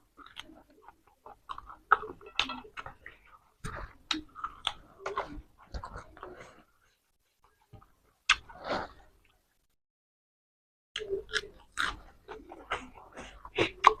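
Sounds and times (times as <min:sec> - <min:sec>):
person chewing crunchy food: 0:00.0 - 0:06.8, 0:11.0 - 0:14.0.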